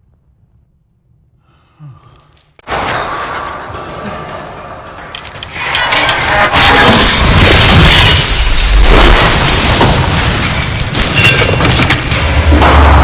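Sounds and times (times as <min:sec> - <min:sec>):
objects crashing and clattering: 0:02.6 - 0:13.0.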